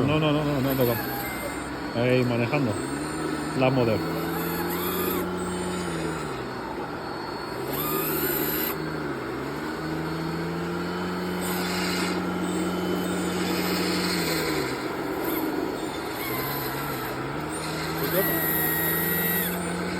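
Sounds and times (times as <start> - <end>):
model excavator humming: 0.0 - 19.9.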